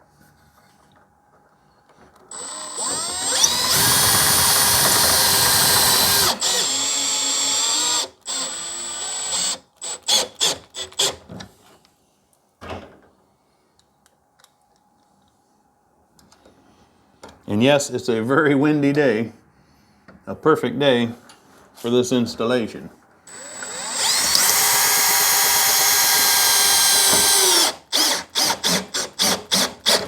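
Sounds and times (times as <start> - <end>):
drill driver motor whining: 2.3 - 10.4, 23.3 - 30.0.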